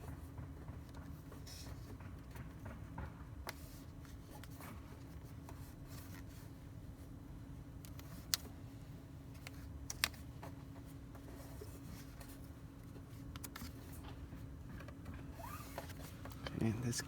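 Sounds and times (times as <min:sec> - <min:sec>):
steady low hum: 0:06.6 - 0:17.0.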